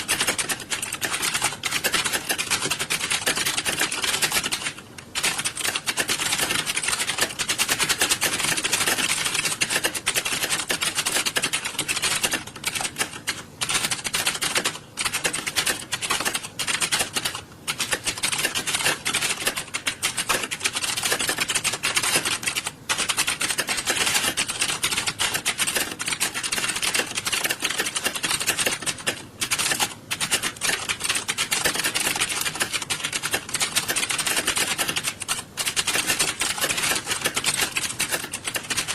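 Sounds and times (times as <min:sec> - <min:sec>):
keyboards typing clatter: 0:00.0 - 0:38.9.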